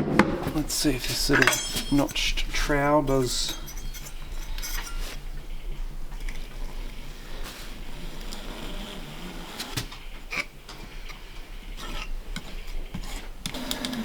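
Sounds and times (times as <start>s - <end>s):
trowel scraping adhesive: 0.1s - 5.2s.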